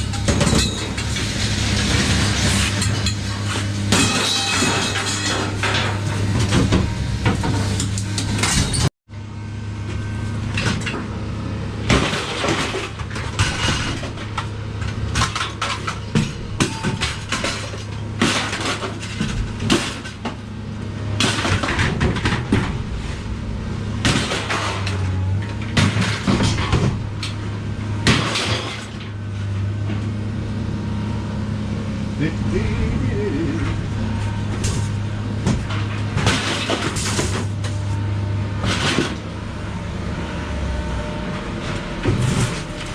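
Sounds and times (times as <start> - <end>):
scrap metal clattering: 0.1 - 6.7, 11.9 - 20.4, 21.1 - 27.5, 41.6 - 42.9
low engine hum: 19.1 - 42.9.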